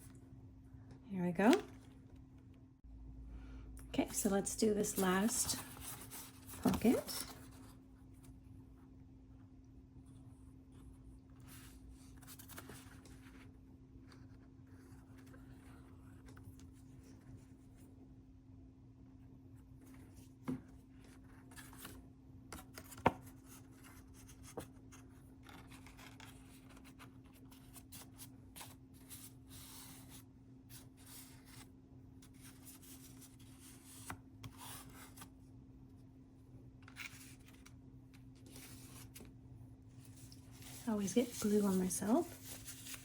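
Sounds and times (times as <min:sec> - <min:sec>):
faint steady hum: 0:00.0 - 0:43.0
paper rustling: 0:04.8 - 0:07.7, 0:40.0 - 0:43.0.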